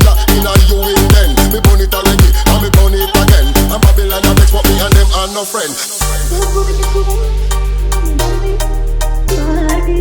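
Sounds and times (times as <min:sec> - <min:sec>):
heavy kick drum and deep bass: 0:00.0 - 0:05.4.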